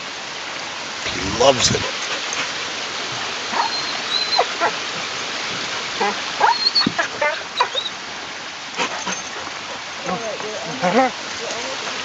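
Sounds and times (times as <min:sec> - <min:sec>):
creek water rushing: 0:00.0 - 0:12.0
dog whining: 0:03.6 - 0:04.5, 0:07.6 - 0:07.9.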